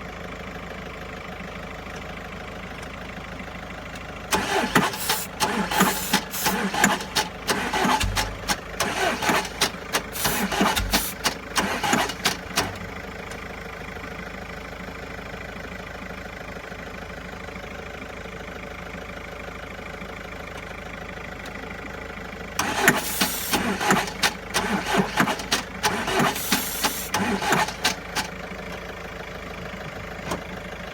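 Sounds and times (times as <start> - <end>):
diesel engine starter cranking: 3.9 - 13.6, 22.6 - 29.0.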